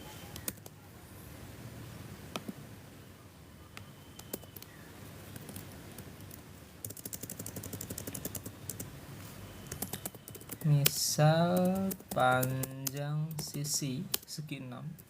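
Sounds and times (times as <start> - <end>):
typing on computer keyboard: 4.2 - 4.7, 5.3 - 8.9, 9.6 - 14.3.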